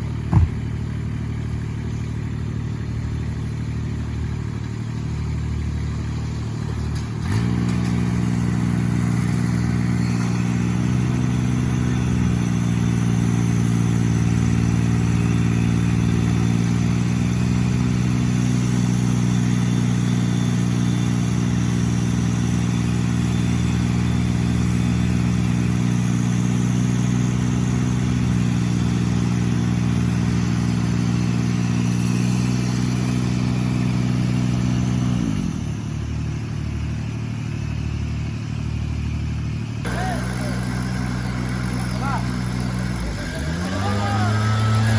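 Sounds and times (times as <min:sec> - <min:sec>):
large engine speeding up: 0:39.8 - 0:44.9.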